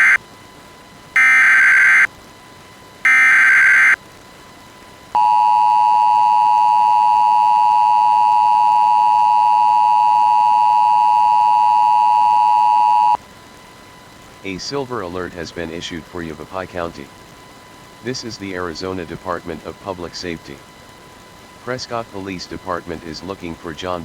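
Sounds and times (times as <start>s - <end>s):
two-tone attention signal: 0.0s - 0.2s, 1.2s - 2.1s, 3.1s - 4.0s
warbling digital data tones: 0.0s - 0.2s, 1.2s - 2.1s, 3.1s - 4.0s.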